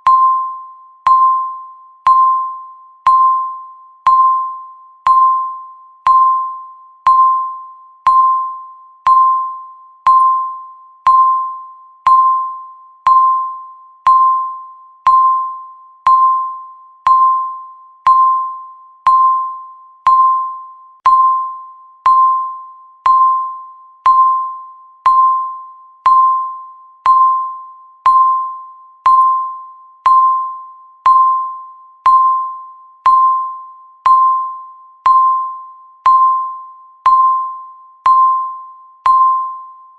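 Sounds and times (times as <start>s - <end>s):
bell-like timer ding: 0.0s - 39.9s.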